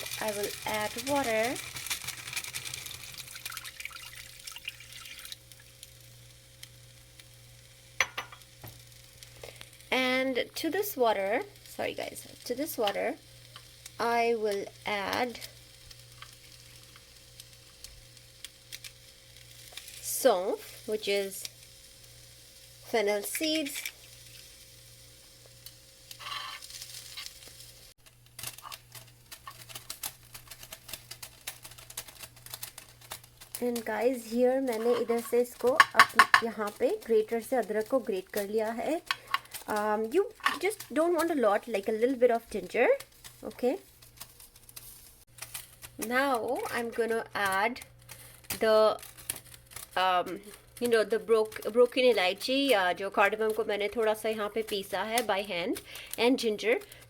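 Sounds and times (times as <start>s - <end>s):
water hissing in a hot pan: 0.0s - 57.0s
water pouring from a cup: 2.9s - 5.5s
light scrapes: 26.2s - 26.7s.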